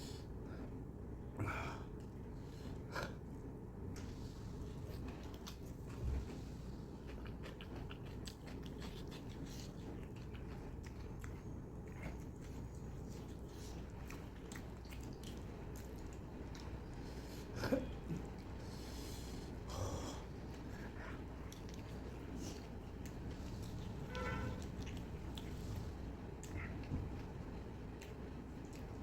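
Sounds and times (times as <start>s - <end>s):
low background hum: 0.0s - 29.0s
close chewing and biting: 4.7s - 18.6s, 20.2s - 29.0s.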